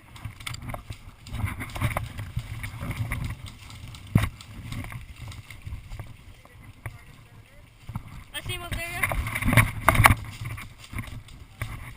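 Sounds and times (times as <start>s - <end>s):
small knocks and clicks: 0.0s - 7.0s
low uneven rumbling: 0.0s - 11.9s.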